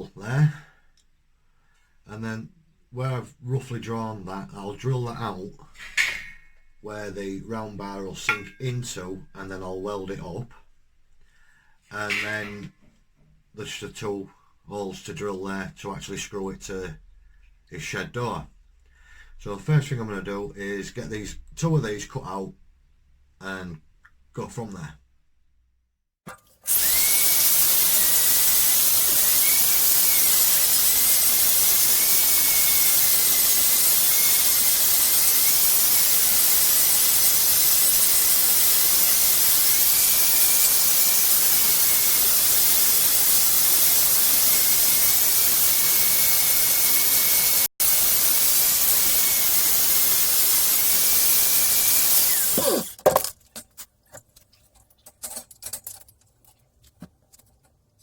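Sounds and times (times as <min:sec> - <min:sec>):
power tool cutting steel: 0:26.6 - 0:53.0.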